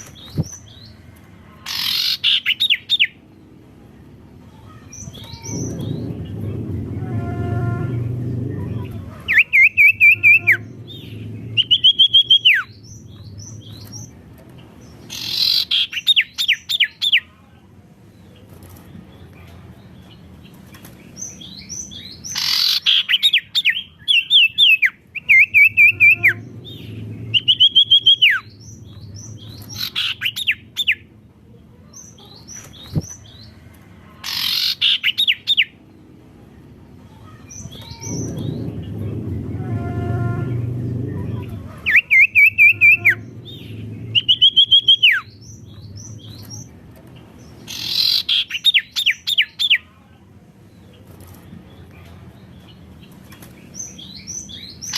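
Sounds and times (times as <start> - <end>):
bird singing whistles and chirps: 41.9 - 46.6.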